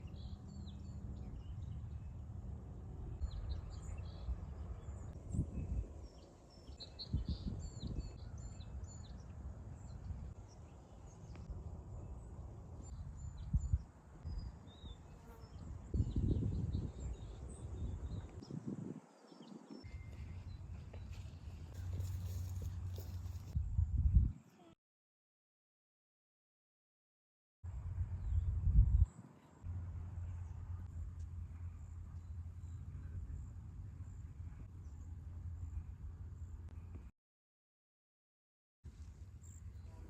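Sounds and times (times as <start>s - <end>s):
wind buffeting microphone: 3.0s - 6.2s, 7.0s - 8.5s, 15.6s - 24.4s, 27.8s - 29.2s.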